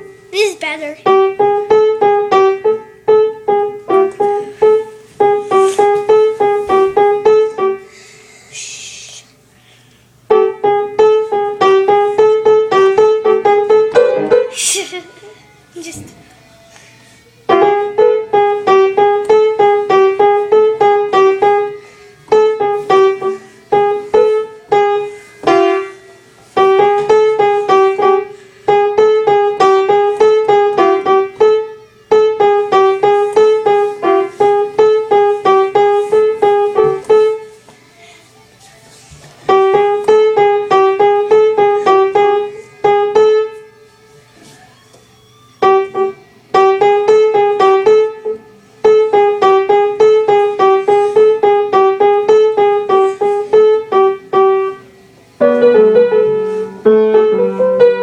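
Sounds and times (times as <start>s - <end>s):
piano ringtone phrase: 10.3s - 16.7s, 17.4s - 37.5s, 39.5s - 58.0s.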